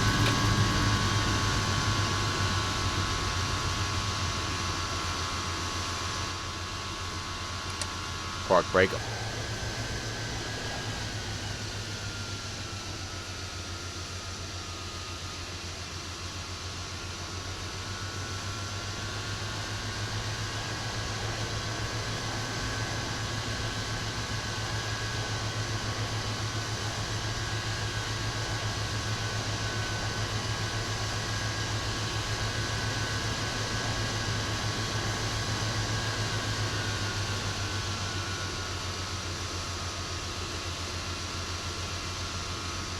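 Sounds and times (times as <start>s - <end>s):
faint high whines: 7.0s - 42.9s
low throbbing hum: 8.9s - 13.5s.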